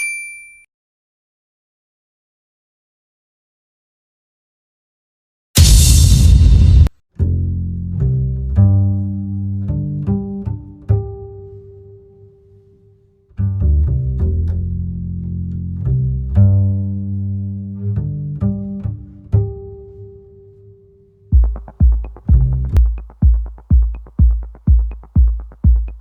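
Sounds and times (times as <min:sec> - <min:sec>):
low string notes: 0:21.4 - 0:26.0.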